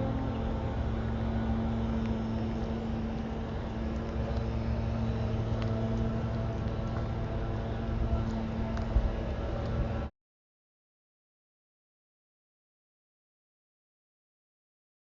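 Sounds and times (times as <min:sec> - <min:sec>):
low engine hum: 0:00.0 - 0:10.1
street traffic rumble: 0:00.0 - 0:10.1.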